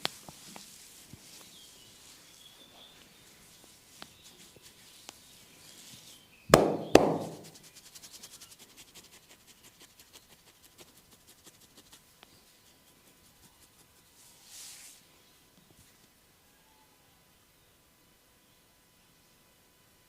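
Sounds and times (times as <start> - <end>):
sharp body cracks: 6.6 - 7.5.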